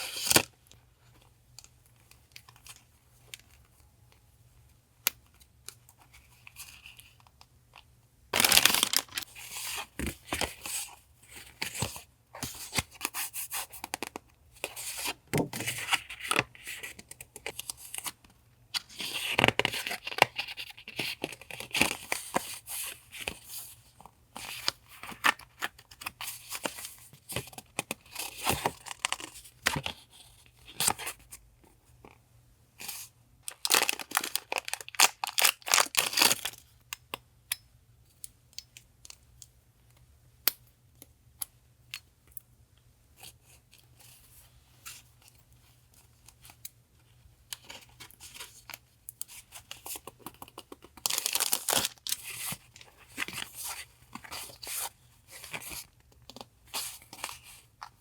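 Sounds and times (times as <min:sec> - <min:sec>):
paper rustling: 0:08.4 - 0:10.5.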